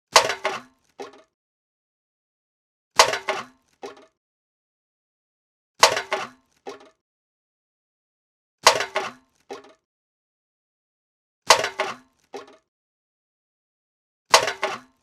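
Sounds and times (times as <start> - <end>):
can landing with a clatter: 0.2 - 1.3, 3.0 - 4.2, 5.8 - 7.0, 8.6 - 9.8, 11.5 - 12.7, 14.3 - 15.0.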